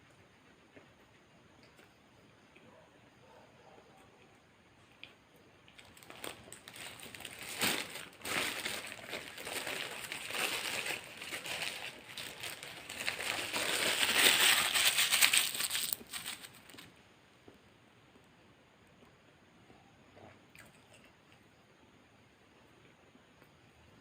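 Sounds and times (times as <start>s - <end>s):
paper wrapper crumpling: 5.8s - 16.9s.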